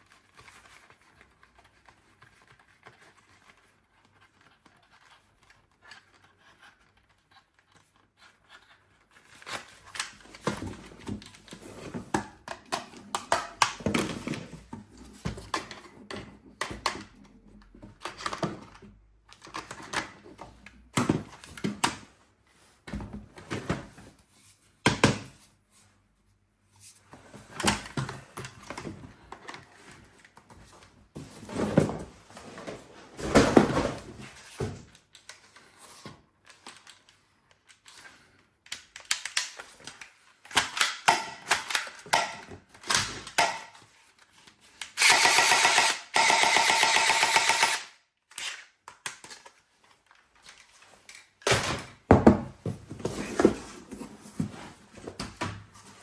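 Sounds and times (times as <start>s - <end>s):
toy gun clicks and clacks: 38.8s - 43.7s, 44.8s - 49.5s.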